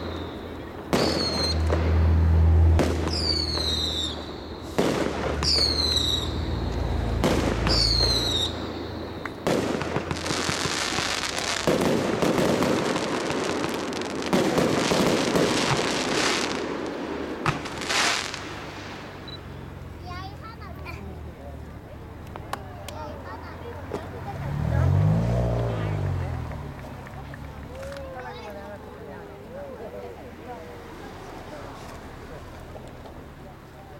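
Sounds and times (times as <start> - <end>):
firework bangs with rumbling echoes: 0.0 - 19.3
dense firework crackling: 0.0 - 20.9.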